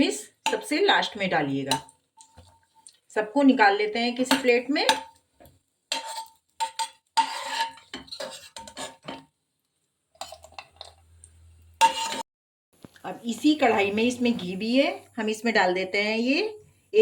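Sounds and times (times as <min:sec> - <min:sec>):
metal spoon scraping a pan: 0:00.4 - 0:02.9, 0:04.0 - 0:09.3, 0:10.2 - 0:11.2, 0:11.8 - 0:12.2.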